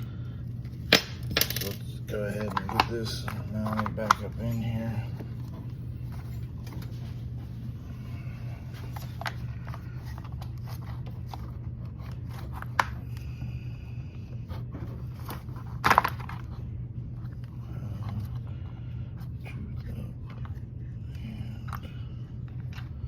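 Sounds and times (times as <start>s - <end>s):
steady low hum: 0.0s - 23.0s
plastic and metal parts scraping: 1.4s - 7.0s.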